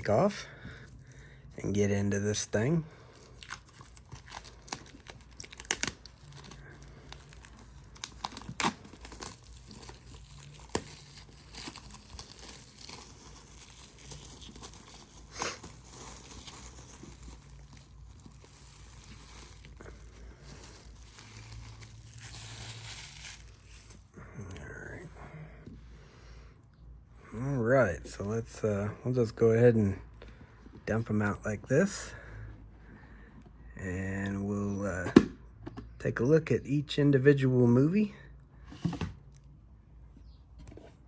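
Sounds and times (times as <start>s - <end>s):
shrink-wrap crinkling and tearing: 2.4s - 24.0s.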